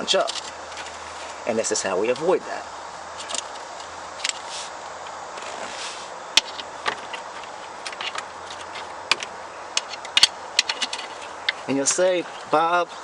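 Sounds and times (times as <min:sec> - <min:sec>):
steady background hiss: 0:00.0 - 0:13.0
hand tools clicking on bolts: 0:07.8 - 0:11.7.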